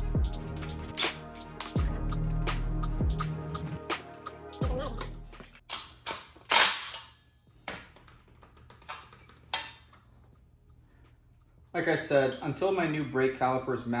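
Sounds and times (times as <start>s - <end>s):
background music: 0.0s - 5.6s
metal parts tapping and clinking: 0.5s - 1.9s, 5.6s - 10.1s.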